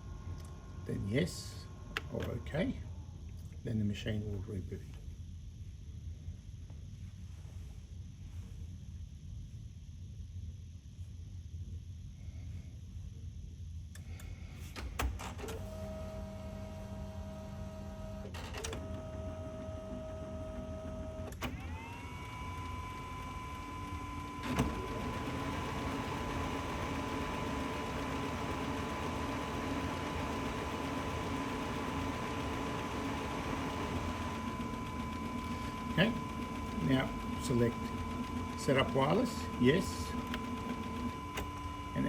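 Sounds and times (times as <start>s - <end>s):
motor whine: 15.6s - 42.0s
motor humming: 15.7s - 42.0s
printer clicks: 31.4s - 41.7s
printer clunk: 34.1s - 41.6s.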